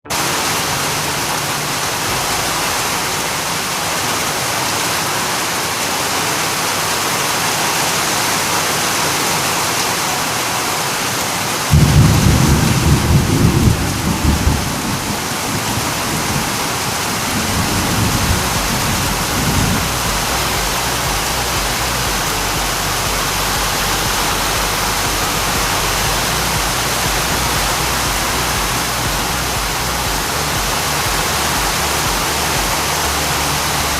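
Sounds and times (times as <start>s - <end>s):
heavy rain falling: 0.0s - 33.9s
thunder clap and rumble: 11.7s - 33.9s.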